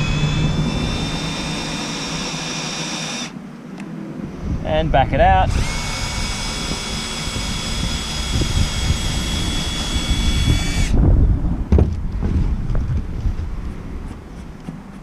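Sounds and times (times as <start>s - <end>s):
power drill motor whining: 0.0s - 3.4s, 5.4s - 11.0s.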